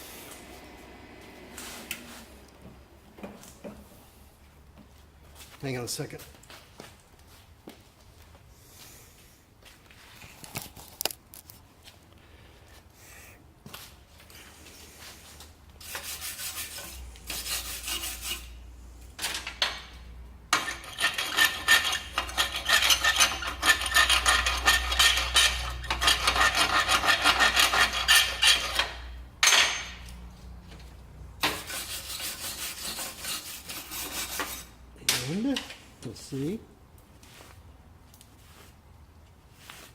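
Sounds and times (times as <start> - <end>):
wire brush scraping metal: 15.8 - 18.6, 20.6 - 29.2.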